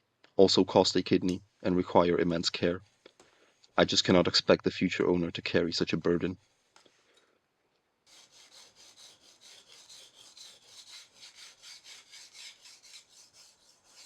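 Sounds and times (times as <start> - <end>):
knife rasping on whetstone: 8.1 - 14.0.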